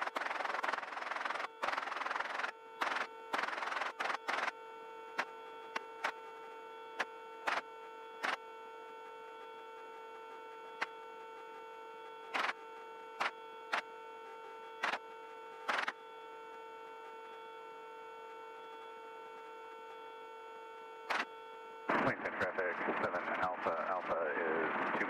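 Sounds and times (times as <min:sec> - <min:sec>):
static bursts: 0:00.0 - 0:16.8, 0:20.9 - 0:25.0
electrical hum on radio audio: 0:00.0 - 0:25.0.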